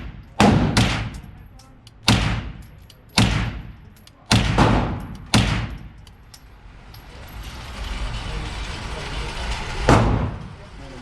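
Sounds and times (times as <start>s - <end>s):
pistol shots echoing: 0.0s - 1.4s, 2.0s - 6.0s.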